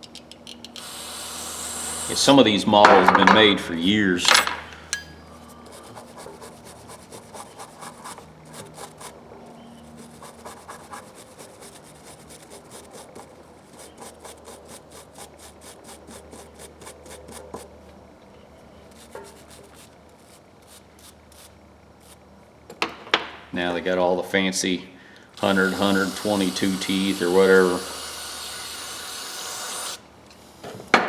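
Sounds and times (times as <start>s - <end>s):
rubbing strokes on metal parts: 5.4s - 17.7s, 18.9s - 22.2s.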